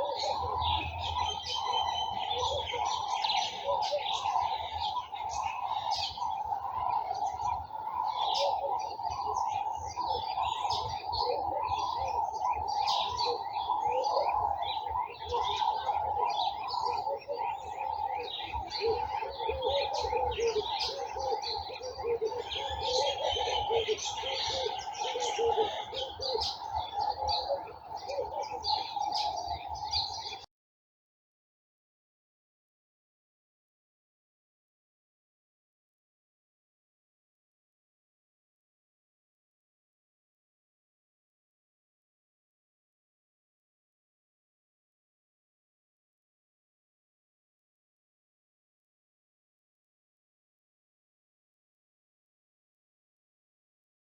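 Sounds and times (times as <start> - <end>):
lower warbling birdsong: 0.0 - 30.5
small birds chirping: 0.0 - 30.5.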